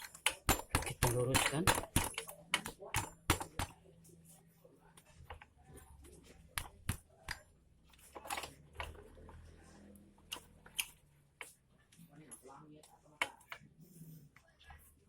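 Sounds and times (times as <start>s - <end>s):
metal parts and tools clicking: 0.0s - 3.7s, 8.0s - 9.0s, 10.3s - 11.5s.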